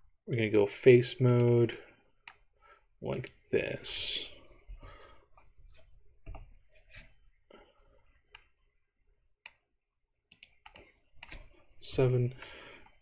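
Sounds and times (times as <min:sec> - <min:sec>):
mouse and keyboard clicks: 0:03.1 - 0:03.4, 0:10.3 - 0:11.5.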